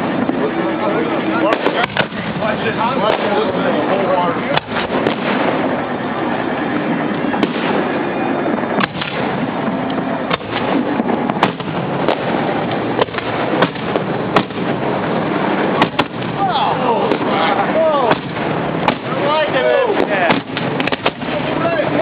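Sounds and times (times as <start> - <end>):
fireworks crackle: 0.0 - 22.0
firework shell bangs: 1.5 - 3.6, 4.5 - 5.8, 7.4 - 8.0, 8.8 - 9.6, 10.3 - 15.1, 15.7 - 21.5.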